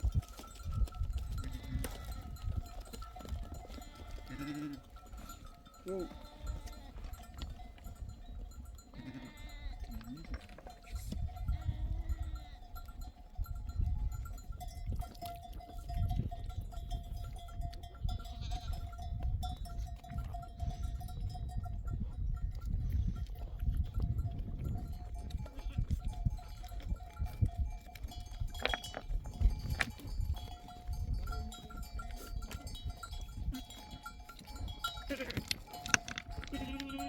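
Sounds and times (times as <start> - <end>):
sheep bells clinking: 0.0 - 37.0
wind rumble on microphone: 0.0 - 37.0
sheep bleating: 1.4 - 2.3, 3.6 - 5.2, 5.8 - 7.2, 8.9 - 10.0, 11.5 - 12.7, 18.2 - 18.9, 34.9 - 35.5, 36.5 - 37.0.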